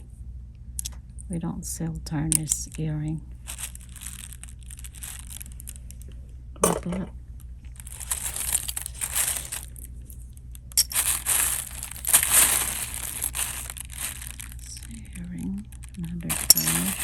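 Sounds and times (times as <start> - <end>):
plastic bags crinkling: 3.4 - 6.2, 7.4 - 17.0.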